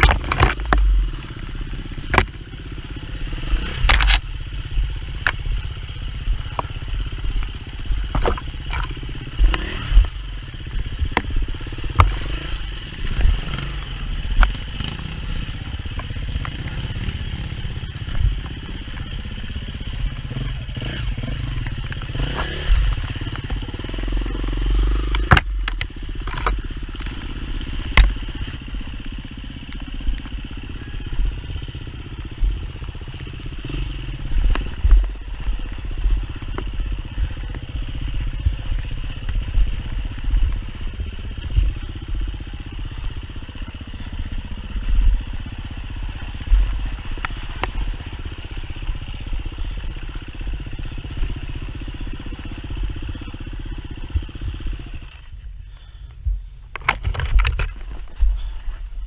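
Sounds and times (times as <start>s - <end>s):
sharp knocks and clatter: 0.0s - 1.0s, 6.6s - 10.2s, 56.7s - 58.2s
dirt bike engine running: 0.0s - 59.0s.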